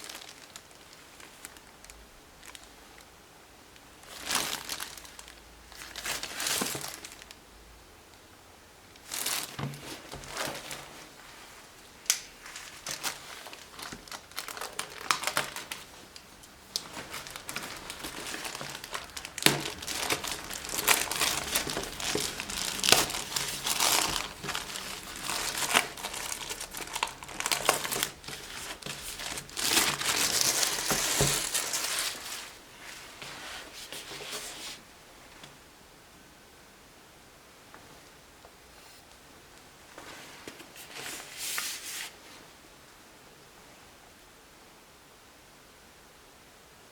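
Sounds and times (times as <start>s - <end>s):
packaging crinkling: 0.0s - 2.7s, 4.0s - 7.4s, 9.0s - 11.3s, 12.0s - 34.8s.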